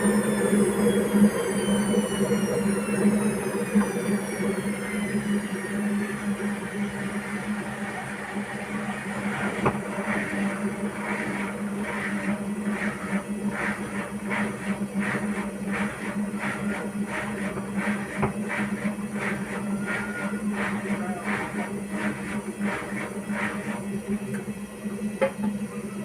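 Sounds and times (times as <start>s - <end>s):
washing machine drum swishing: 8.7s - 24.3s.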